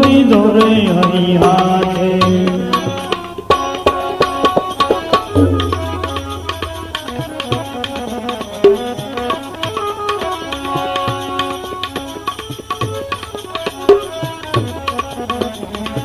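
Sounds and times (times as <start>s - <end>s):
hand drums playing fast: 0.0s - 16.0s
held melodic tones: 3.3s - 12.3s
deep bass drum note: 5.3s - 7.6s.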